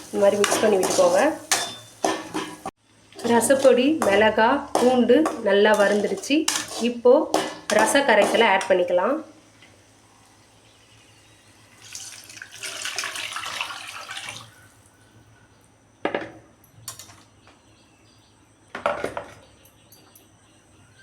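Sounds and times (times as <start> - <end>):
utensils clinking against pan: 0.0 - 8.8
liquid poured into pan splashing: 11.7 - 14.5.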